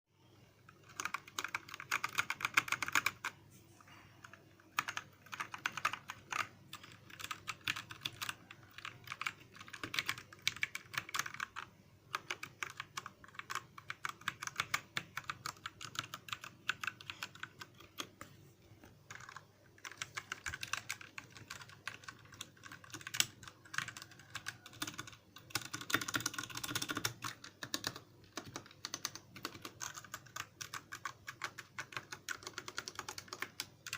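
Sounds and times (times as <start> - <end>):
mechanical keyboard typing: 0.7 - 3.4, 4.2 - 33.9.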